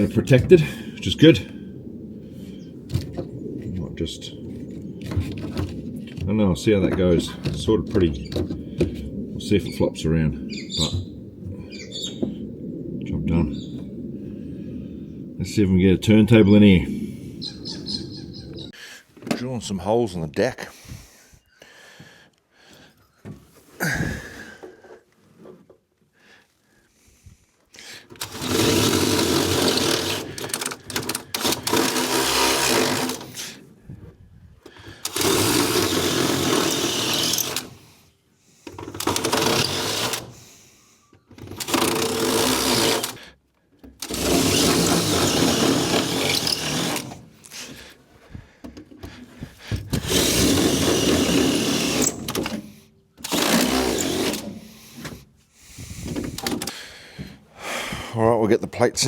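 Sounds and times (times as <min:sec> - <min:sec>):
power drill boring: 0:28.0 - 0:33.6, 0:34.9 - 0:37.9, 0:38.7 - 0:40.6, 0:41.4 - 0:43.3, 0:43.9 - 0:47.9, 0:49.6 - 0:54.8.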